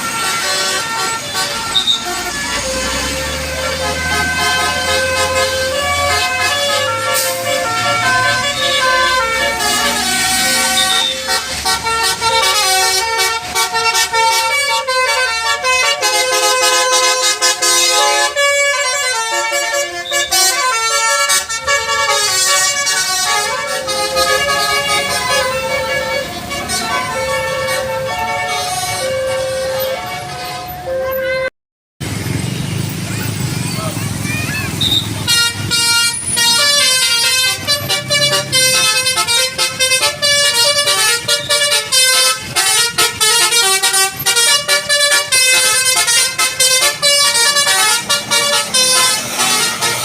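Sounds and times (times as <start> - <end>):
bus musical air horn tune: 0.0 - 31.5, 34.8 - 50.0.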